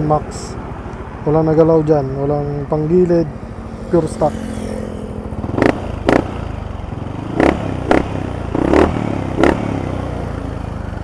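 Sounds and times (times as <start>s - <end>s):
scooter engine idling: 0.0s - 11.0s
scooter engine revving: 3.3s - 11.0s.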